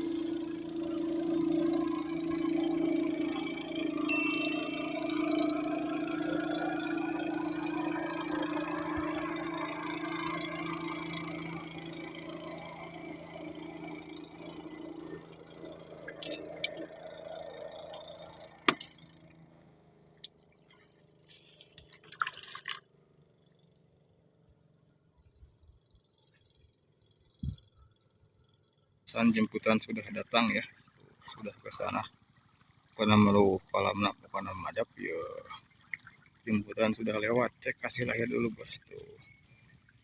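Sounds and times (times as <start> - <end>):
boat motor running: 0.0 - 24.1, 29.1 - 40.0
splashy clatter: 20.7 - 22.9.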